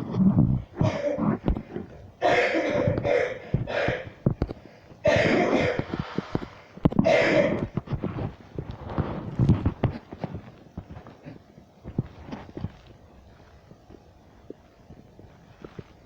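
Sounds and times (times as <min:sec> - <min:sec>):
woman coughing: 0:02.2 - 0:04.2, 0:05.0 - 0:05.9, 0:07.0 - 0:07.7.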